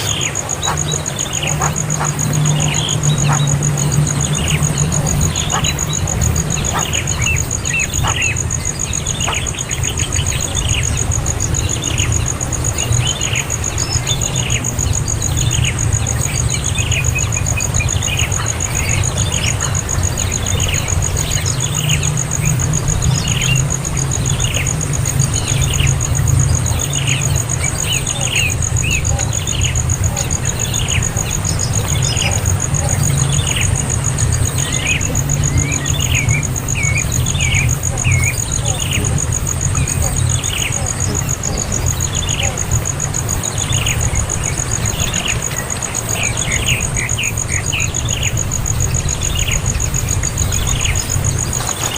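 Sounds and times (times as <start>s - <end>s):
young bird chirping: 0.0s - 3.6s, 4.4s - 8.4s
steady low hum: 0.0s - 51.6s.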